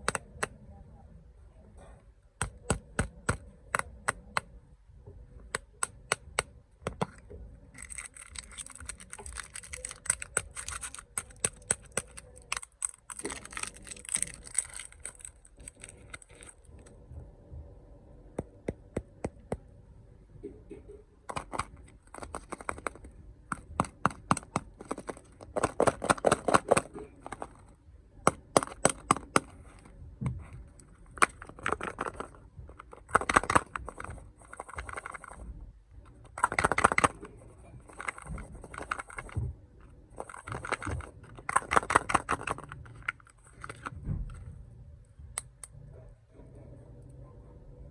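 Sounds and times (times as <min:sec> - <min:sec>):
sharp clicks and taps: 0:00.0 - 0:00.6, 0:02.4 - 0:04.5, 0:05.4 - 0:16.5
plastic wrappers crinkling and tearing: 0:07.8 - 0:16.9.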